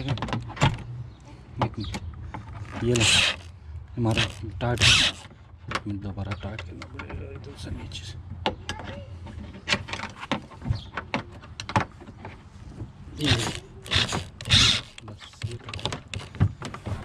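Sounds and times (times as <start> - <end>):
hardware clicks and knocks: 0.0 - 0.9, 1.5 - 17.0
short rasping bursts: 2.9 - 3.5, 4.1 - 5.3, 13.2 - 15.1.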